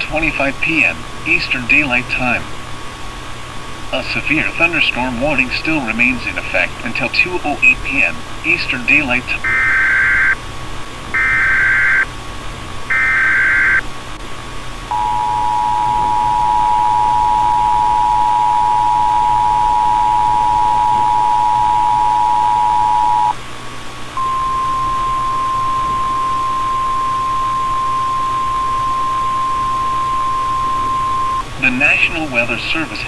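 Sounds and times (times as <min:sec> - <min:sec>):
buzzy warbling data bursts: 0:07.5 - 0:10.4, 0:11.2 - 0:12.1, 0:12.9 - 0:13.8
two-tone attention signal: 0:14.9 - 0:23.4, 0:24.2 - 0:31.4.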